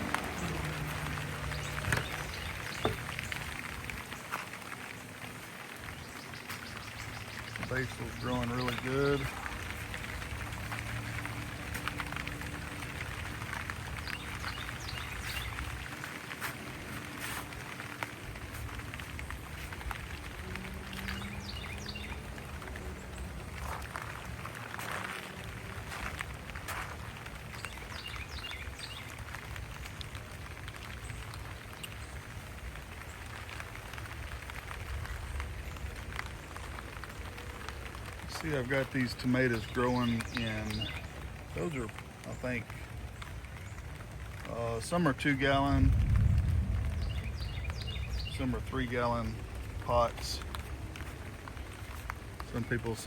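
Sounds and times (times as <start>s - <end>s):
bird chirping: 0.0s - 4.4s, 10.6s - 18.0s, 18.6s - 24.2s, 38.4s - 43.9s, 46.8s - 50.1s
low wind rumble: 0.0s - 53.0s
raindrops ticking on leaves: 0.0s - 53.0s.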